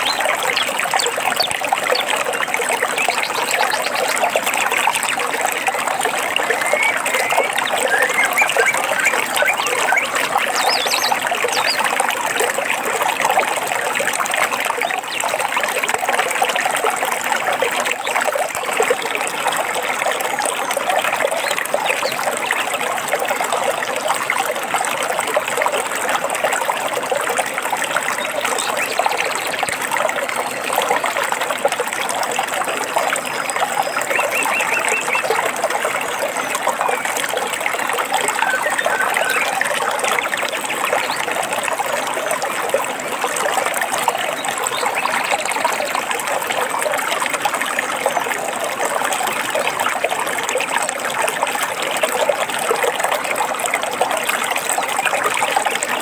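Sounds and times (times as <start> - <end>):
stream trickling over rocks: 0.0 - 56.0
bird chirps: 6.4 - 11.8, 38.3 - 40.3
bird trilling: 38.3 - 40.0.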